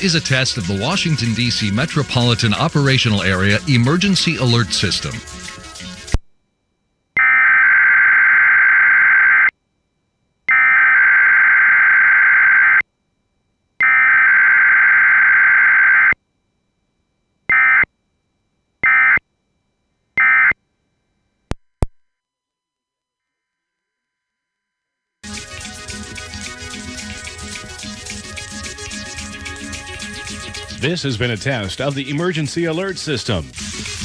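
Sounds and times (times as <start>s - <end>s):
warbling two-tone data bursts: 18.8s - 19.2s, 25.2s - 32.4s.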